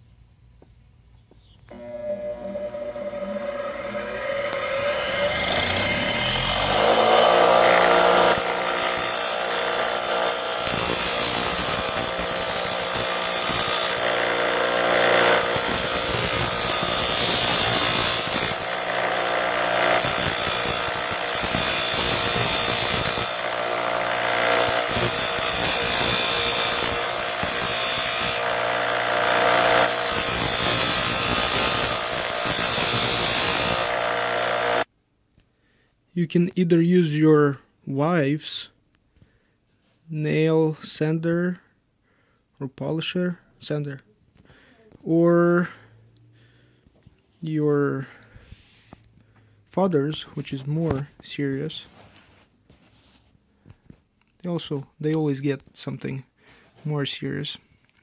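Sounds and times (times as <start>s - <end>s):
rotary sander grinding plastic: 1.7s - 34.9s.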